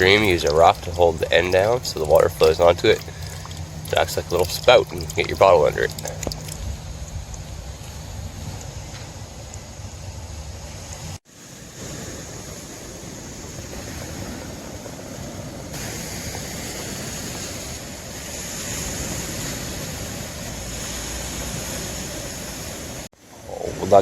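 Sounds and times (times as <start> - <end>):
surf rushing on beach: 0.0 - 6.0, 10.6 - 24.0
wind on microphone: 0.0 - 23.1.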